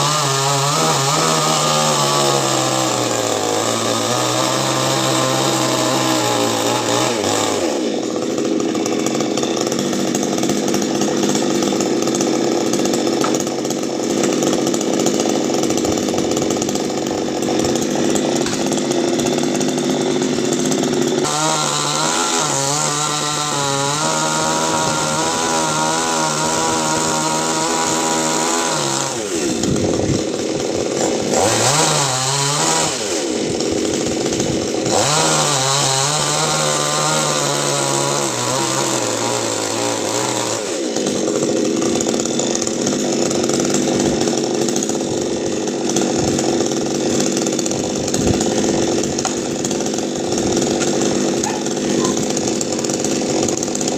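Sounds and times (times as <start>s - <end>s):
chainsaw cutting wood: 0.0s - 53.9s.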